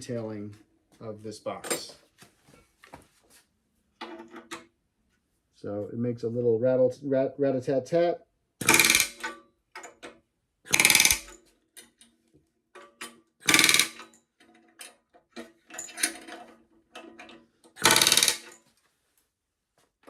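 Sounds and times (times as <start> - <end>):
rivet gun hammering: 8.6 - 9.4, 10.7 - 11.4, 13.4 - 14.1, 17.8 - 18.6.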